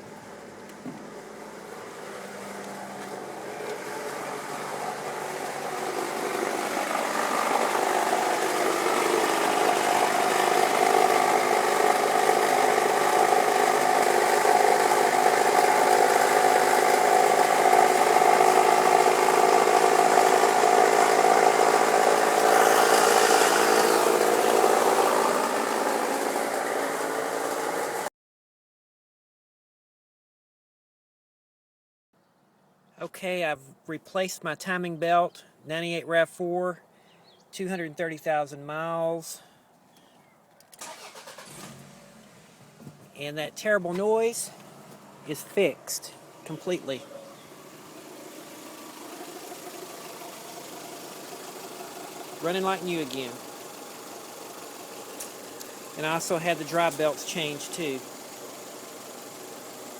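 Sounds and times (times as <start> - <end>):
car engine running noisily: 0.0 - 28.1, 40.8 - 43.2, 44.5 - 59.9.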